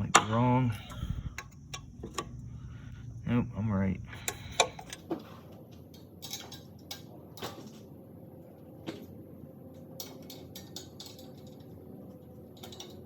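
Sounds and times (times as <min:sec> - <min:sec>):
wrench clicking on bolt: 0:04.2 - 0:05.0.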